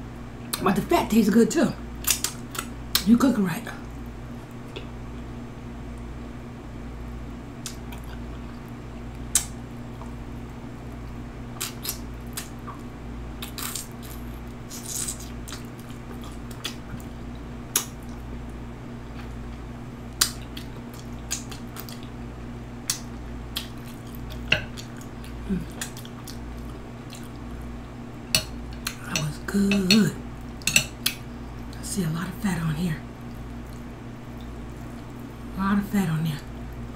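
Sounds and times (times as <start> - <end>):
steady low hum: 0.0 - 36.9
chewing mouth clicks and smacks: 2.0 - 3.1, 7.6 - 10.2, 11.0 - 18.2, 20.2 - 22.2, 22.8 - 27.6, 30.4 - 31.8, 33.3 - 35.3.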